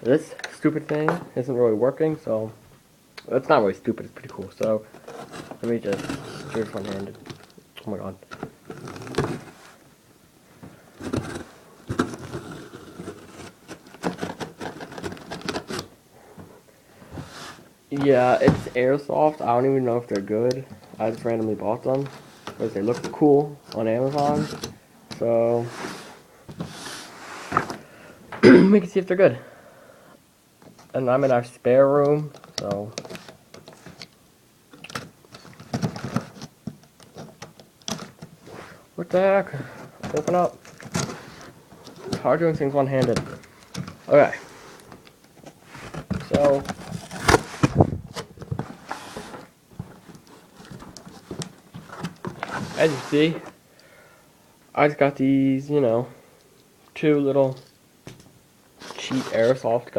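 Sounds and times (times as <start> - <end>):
cardboard packaging clicks and rustles: 4.2 - 9.8, 10.6 - 15.9, 32.1 - 38.5, 39.1 - 53.6
cardboard box being opened: 45.5 - 53.5.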